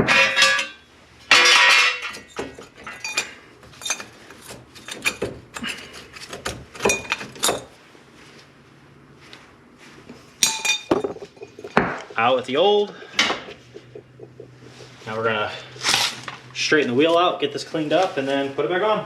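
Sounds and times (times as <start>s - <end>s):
metal parts clinking and clanking: 0.0s - 7.7s, 10.4s - 11.9s.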